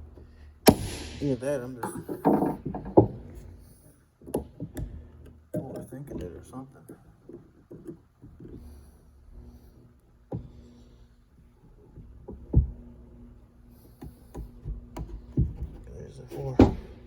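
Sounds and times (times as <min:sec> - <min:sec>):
faint steady hum: 0:00.0 - 0:17.0
knocks and clicks of hands working: 0:14.0 - 0:15.9.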